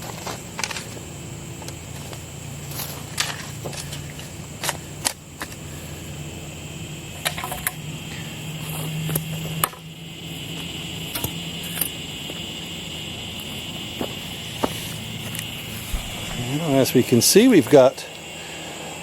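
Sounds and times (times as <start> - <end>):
low hum: 15.7 - 17.0
soil being packed with knocks: 15.8 - 16.6.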